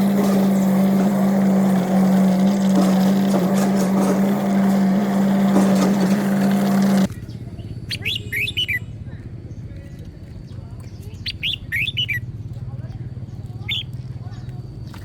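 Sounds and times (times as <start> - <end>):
boat motor humming: 0.0 - 9.4
bird chirps: 7.2 - 8.9, 10.4 - 12.3.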